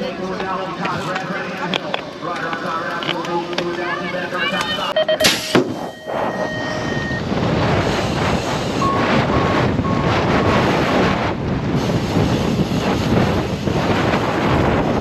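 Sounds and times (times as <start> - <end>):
faint short beeps: 4.9 - 7.2
wind buffeting microphone: 5.7 - 15.0.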